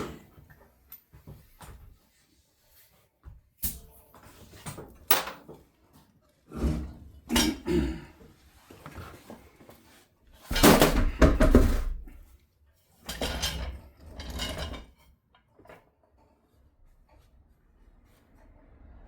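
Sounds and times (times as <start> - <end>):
metal tools clanking: 5.0 - 5.6.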